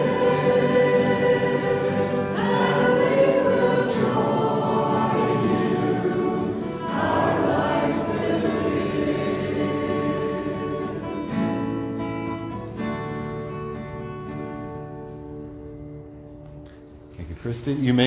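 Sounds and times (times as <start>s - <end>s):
congregation singing a hymn: 0.0s - 12.2s.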